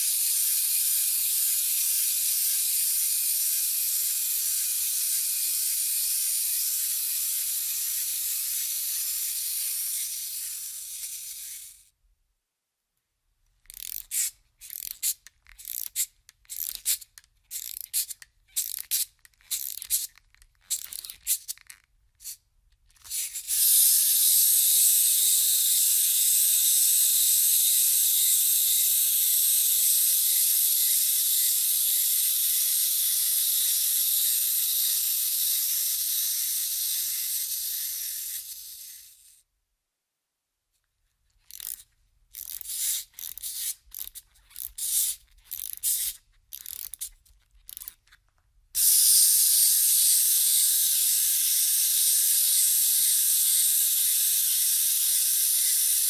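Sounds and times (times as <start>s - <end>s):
clockwork mechanism whirring: 0.0s - 11.9s, 13.7s - 21.8s, 23.0s - 39.4s, 41.5s - 48.0s, 48.8s - 56.0s
clockwork key ratcheting: 41.4s - 48.2s, 48.9s - 56.0s.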